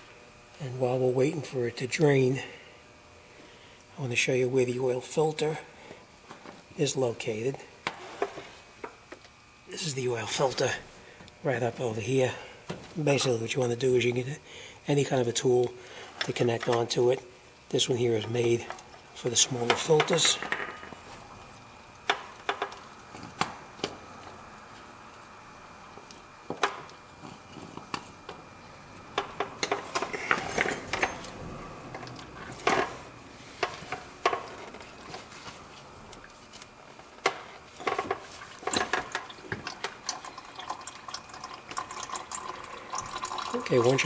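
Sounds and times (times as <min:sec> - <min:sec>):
oil pouring into a bucket: 0:38.3 - 0:44.0.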